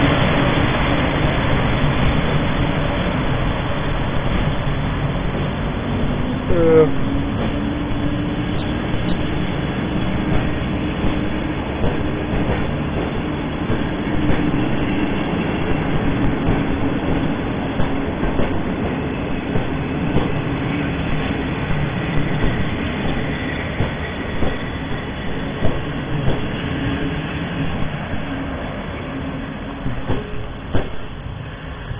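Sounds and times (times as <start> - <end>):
train rolling past: 0.0 - 31.9
wheels clicking over rail joints: 9.9 - 24.7.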